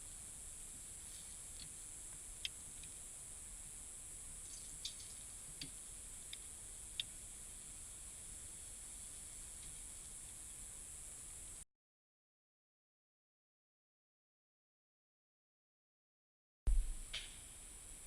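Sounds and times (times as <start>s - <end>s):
steady high hiss: 0.0s - 11.6s, 16.7s - 18.0s
faint sharp clicks: 4.5s - 7.1s.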